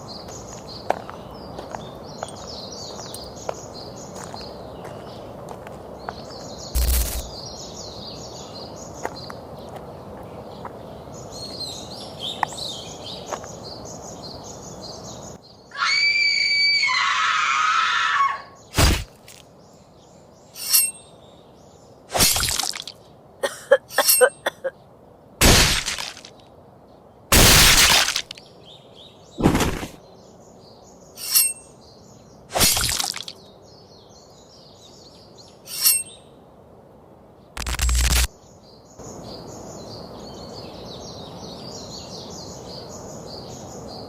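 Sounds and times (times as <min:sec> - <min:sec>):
loud high cry dropping in pitch: 0:15.7 - 0:18.6
faint bird chirps: 0:30.0 - 0:36.4.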